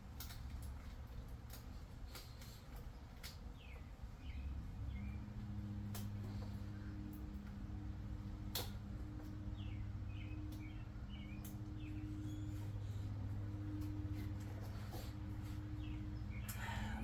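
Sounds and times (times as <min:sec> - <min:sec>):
low electrical hum: 0:00.0 - 0:17.0
faint bird chirps: 0:09.5 - 0:14.0.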